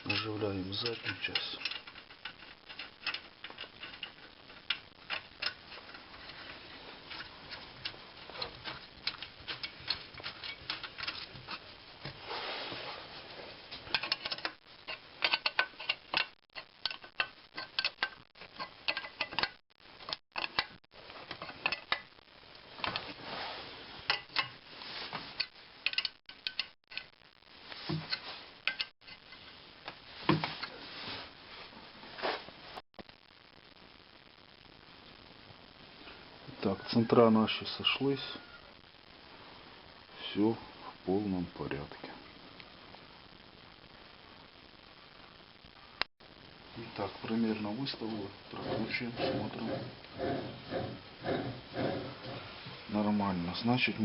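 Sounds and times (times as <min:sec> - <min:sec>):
small metal parts clinking: 0:00.0 - 0:05.6.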